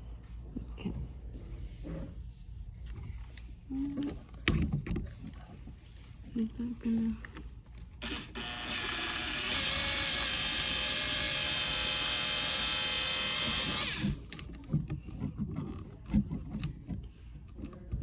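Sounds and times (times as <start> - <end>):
power screwdriver running: 8.0 - 14.2.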